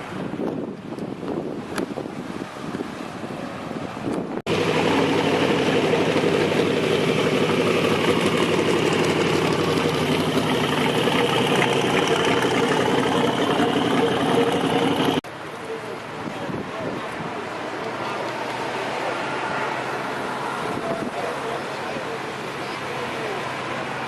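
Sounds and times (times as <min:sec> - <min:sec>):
wind noise: 0:00.0 - 0:04.6
vehicle engine idling: 0:04.5 - 0:16.3.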